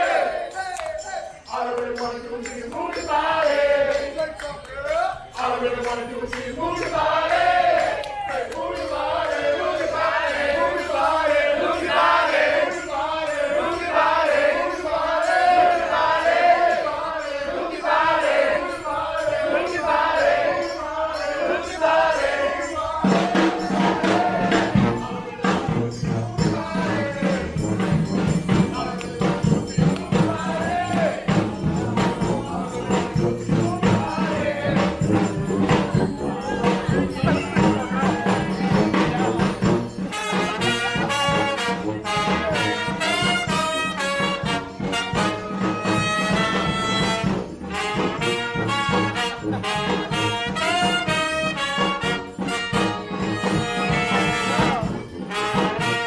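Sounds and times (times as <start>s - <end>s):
group singing in unison: 0.0s - 56.0s
brass band with drums: 23.0s - 56.0s.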